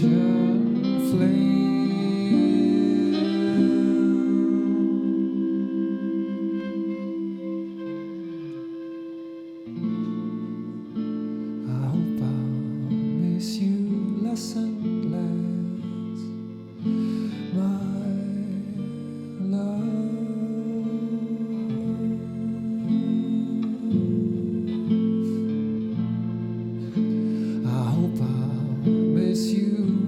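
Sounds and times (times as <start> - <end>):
acoustic guitar chords: 0.0 - 30.0.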